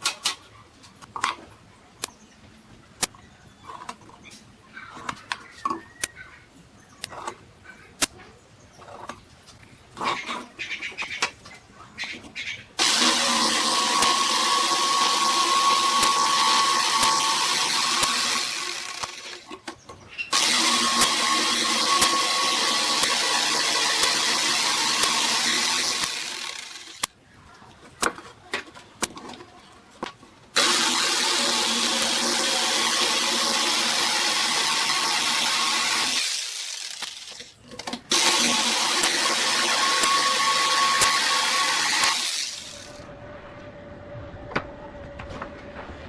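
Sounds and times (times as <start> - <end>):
power tool motor whining: 12.8 - 19.5, 20.3 - 27.1, 30.6 - 37.5, 38.1 - 43.1.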